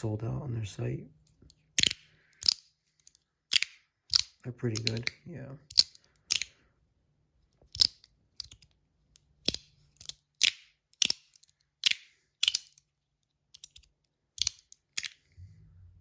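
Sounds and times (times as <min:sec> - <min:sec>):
fidget toy clicking: 0:01.3 - 0:06.6, 0:07.6 - 0:12.9, 0:13.5 - 0:15.4.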